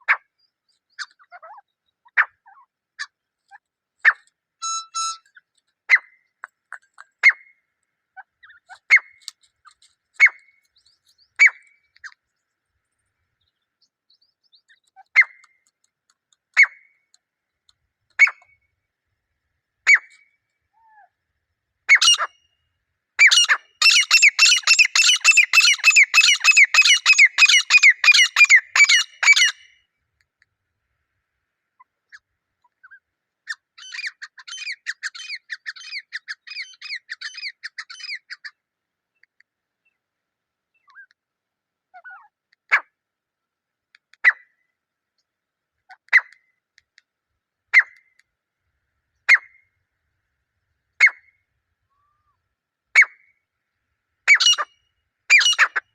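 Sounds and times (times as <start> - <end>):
francolin calling: 23.2 - 29.7.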